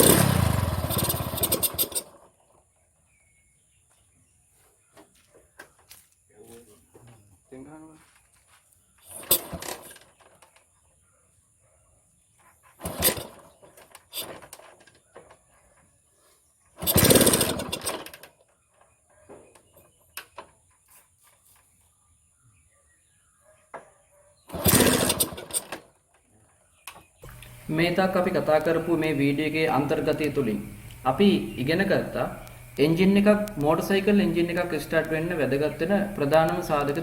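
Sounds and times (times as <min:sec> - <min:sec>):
small motorcycle engine starting: 0:00.0 - 0:02.7, 0:09.0 - 0:10.7, 0:12.6 - 0:15.5, 0:16.7 - 0:18.7, 0:24.5 - 0:26.1, 0:27.2 - 0:37.0.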